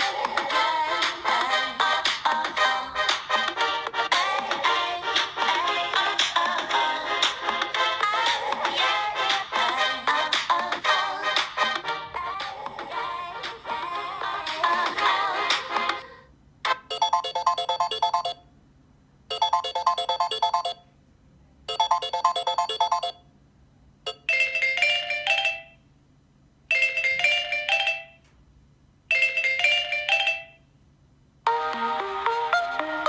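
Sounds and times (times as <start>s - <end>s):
chiming ringtone: 16.9s - 18.4s, 19.3s - 20.8s, 21.7s - 23.2s, 24.1s - 25.8s, 26.7s - 28.2s, 29.1s - 30.7s.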